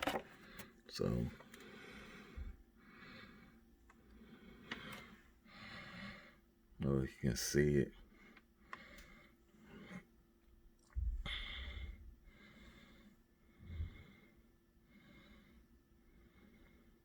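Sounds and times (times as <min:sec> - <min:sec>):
person breathing softly: 0:00.2 - 0:06.5, 0:11.0 - 0:17.0.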